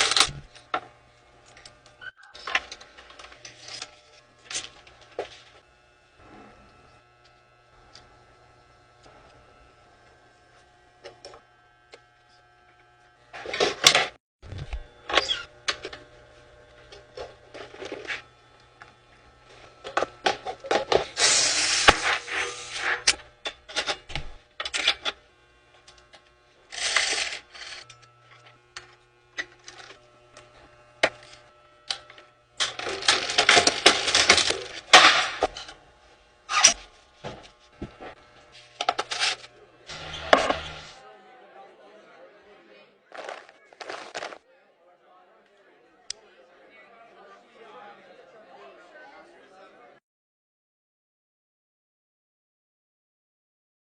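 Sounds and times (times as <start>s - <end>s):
packaging crinkling and rustling: 43.1s - 44.4s.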